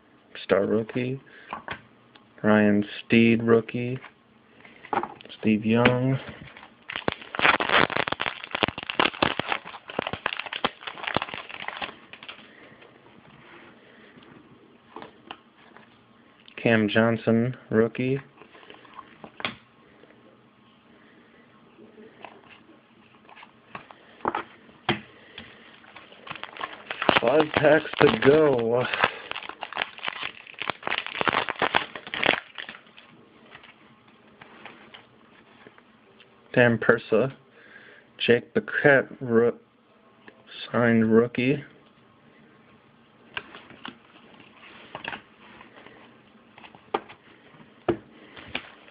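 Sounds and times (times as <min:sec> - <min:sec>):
cards rustling: 0:05.4 - 0:12.8, 0:25.3 - 0:33.8
wrapper crinkling and tearing: 0:06.1 - 0:12.7, 0:25.5 - 0:33.8
trading cards clicking and rustling: 0:25.9 - 0:32.8.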